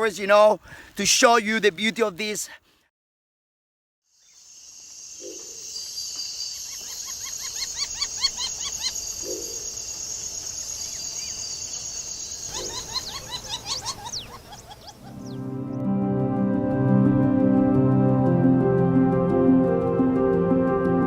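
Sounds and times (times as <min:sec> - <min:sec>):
high insect chorus: 0:04.1 - 0:15.4
bird chirping: 0:04.1 - 0:15.5.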